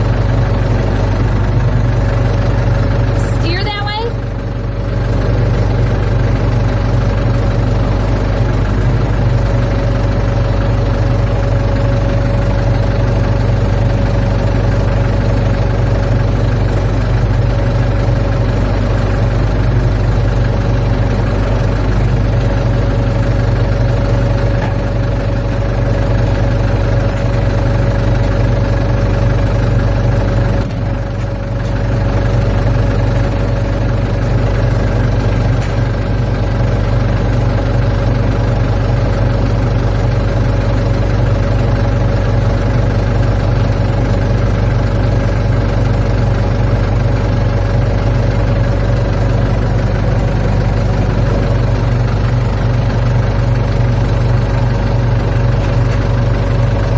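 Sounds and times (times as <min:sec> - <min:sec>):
backhoe engine running: 0:00.0 - 0:56.9
steady whine: 0:48.2 - 0:56.9.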